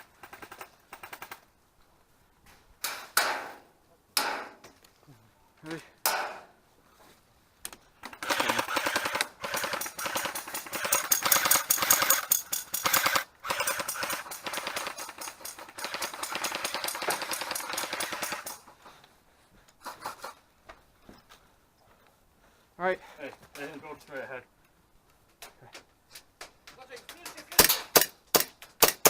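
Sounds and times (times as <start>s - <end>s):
airsoft gun firing rapidly: 8.2s - 18.6s.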